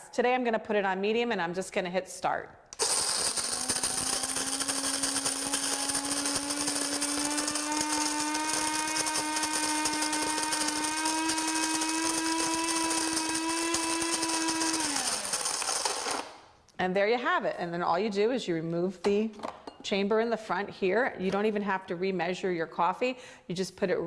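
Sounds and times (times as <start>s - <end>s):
coffee beans crunching: 2.8s - 16.4s
coffee grinder motor whine: 2.8s - 16.4s.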